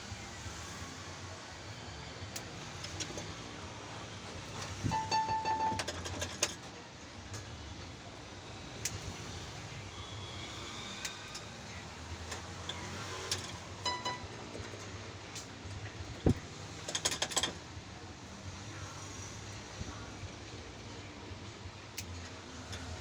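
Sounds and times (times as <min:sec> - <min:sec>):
brief pitched tone: 0:04.9 - 0:06.0, 0:13.9 - 0:14.4
keyboard keys clicking: 0:04.9 - 0:06.1.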